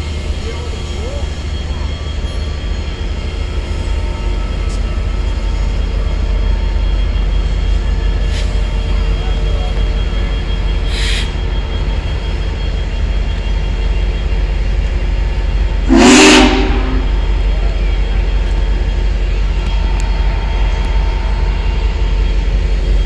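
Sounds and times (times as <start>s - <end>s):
steam hiss: 0.0s - 5.9s, 8.2s - 12.5s
steam locomotive rumbling: 0.0s - 23.0s
steam whistle blast: 10.9s - 11.3s, 15.9s - 17.6s.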